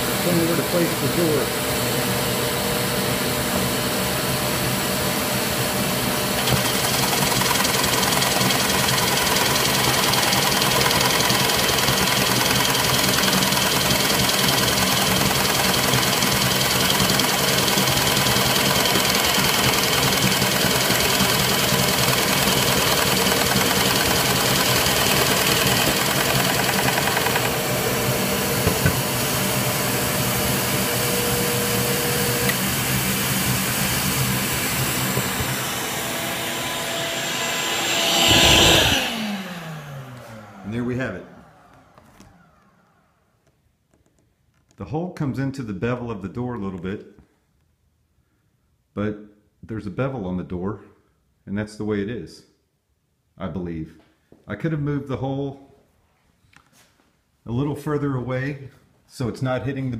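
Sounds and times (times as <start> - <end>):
shop vacuum running: 0.0 - 43.5
drill press boring wood: 6.2 - 43.0.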